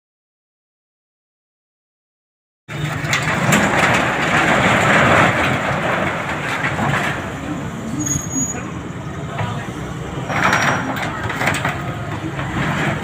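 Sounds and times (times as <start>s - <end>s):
loud rattling mechanical noise: 2.7s - 7.9s, 8.7s - 13.0s.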